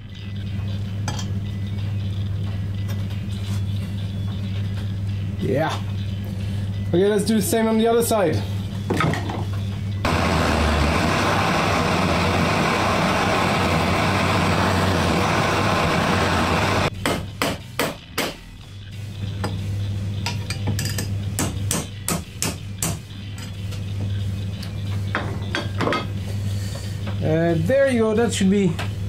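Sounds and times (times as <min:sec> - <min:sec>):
torch flame hissing: 0:10.1 - 0:16.9.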